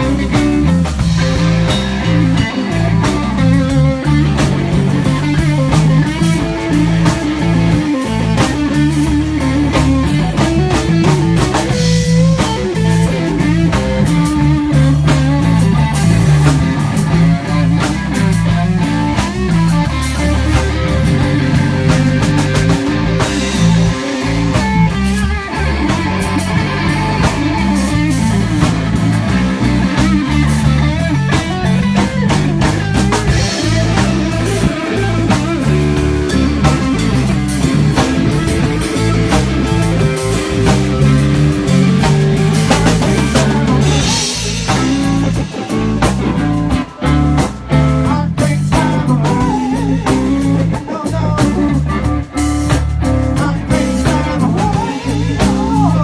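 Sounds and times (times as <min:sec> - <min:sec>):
live rock band playing: 0:00.0 - 0:56.0.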